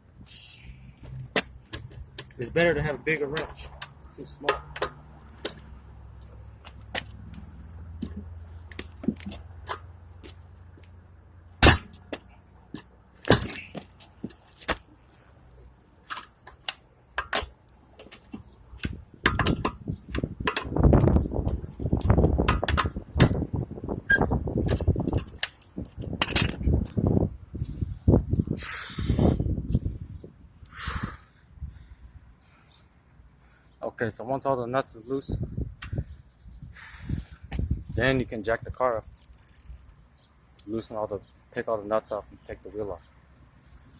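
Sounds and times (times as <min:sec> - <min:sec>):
lug wrench clinking on lug nuts: 0:06.6 - 0:09.9, 0:11.6 - 0:12.2, 0:18.8 - 0:21.1, 0:24.1 - 0:27.0.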